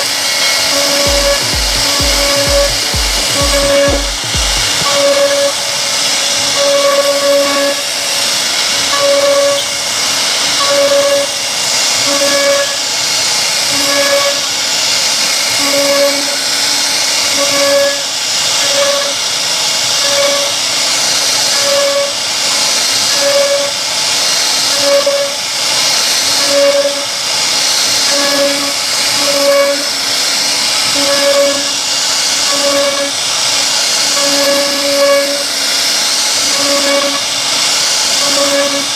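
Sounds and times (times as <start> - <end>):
short pitched tone: 0.7 - 5.4
router spindle hiss: 18.0 - 38.9.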